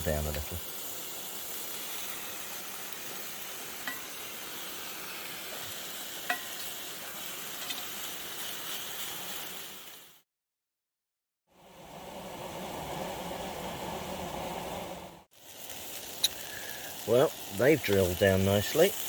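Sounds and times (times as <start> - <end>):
food sizzling in a frying pan: 0.0 - 10.2, 15.3 - 19.0.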